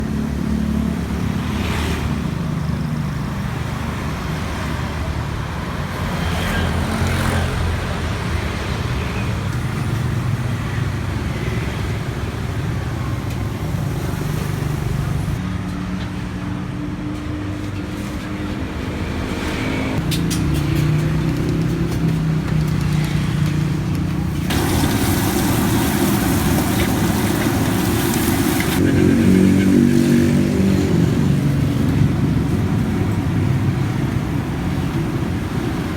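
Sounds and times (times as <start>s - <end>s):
road traffic rumble: 0.0s - 35.9s.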